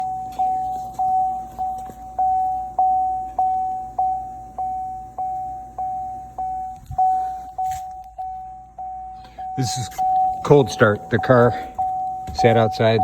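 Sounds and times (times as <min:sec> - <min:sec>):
car warning chime: 0:00.0 - 0:13.0.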